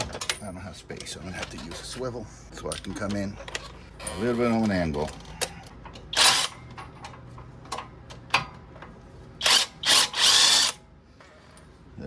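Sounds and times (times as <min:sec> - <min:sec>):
impact wrench bursts: 0:06.1 - 0:06.6, 0:09.4 - 0:10.8.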